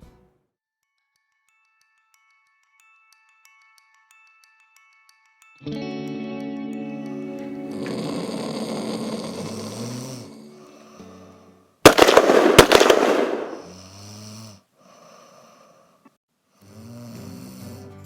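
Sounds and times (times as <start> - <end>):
person snoring: 7.7 - 11.5, 13.6 - 16.0, 16.6 - 18.0.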